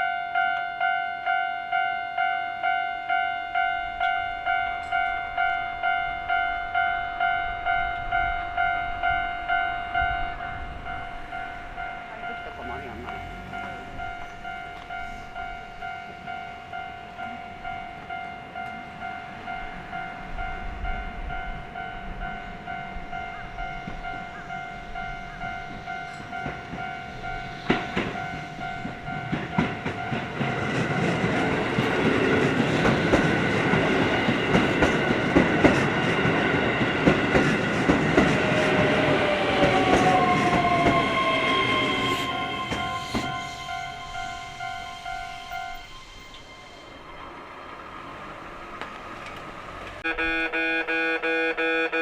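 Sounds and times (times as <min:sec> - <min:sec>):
level crossing warning bell: 0:00.0 - 0:48.9
train rumbling past: 0:01.7 - 0:50.0
falling whine: 0:23.8 - 0:50.4
wheels clicking over rail joints: 0:48.4 - 0:50.0.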